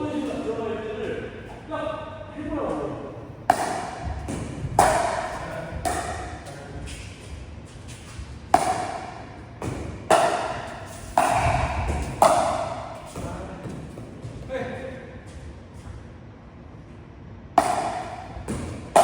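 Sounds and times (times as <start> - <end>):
paddles striking pickleball: 3.5 - 7.0, 8.5 - 14.1, 17.6 - 19.0.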